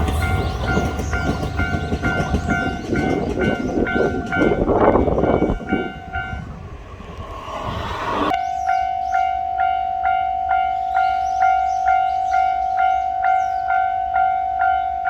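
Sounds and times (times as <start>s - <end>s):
train rumble and wheel noise: 0.0s - 8.8s.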